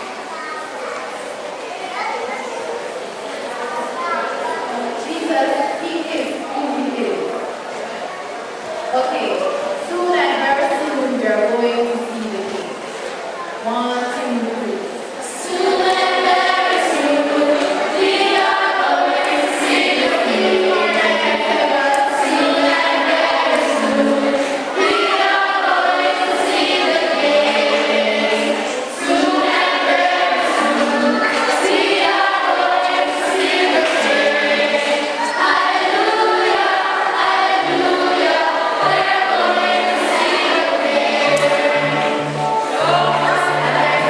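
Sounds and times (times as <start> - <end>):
group singing a hymn: 15.2 - 44.0.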